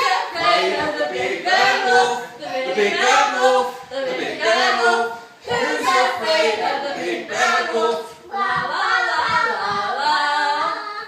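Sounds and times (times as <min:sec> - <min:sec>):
woman and child singing: 0:07.9 - 0:11.0.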